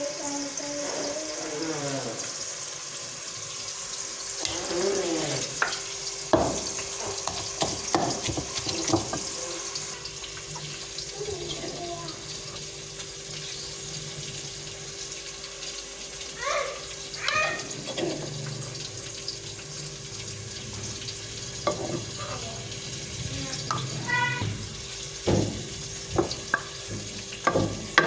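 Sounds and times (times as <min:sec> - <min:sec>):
cookware clattering: 0:05.6 - 0:09.4, 0:17.7 - 0:18.5, 0:21.6 - 0:22.2.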